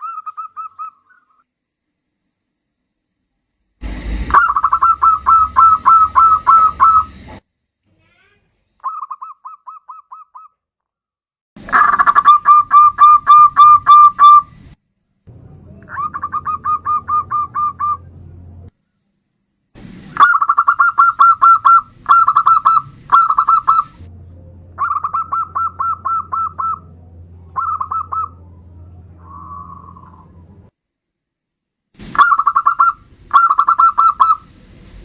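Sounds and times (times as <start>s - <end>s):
dove cooing: 4.3s - 7.1s, 15.9s - 18.0s, 20.2s - 24.0s, 24.8s - 26.9s, 27.5s - 28.6s, 29.2s - 30.6s, 32.2s - 34.5s.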